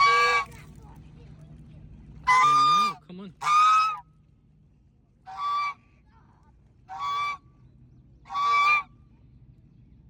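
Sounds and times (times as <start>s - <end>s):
goose honking: 0.0s - 0.6s, 2.2s - 4.0s, 5.3s - 5.8s, 6.9s - 7.4s, 8.3s - 8.9s.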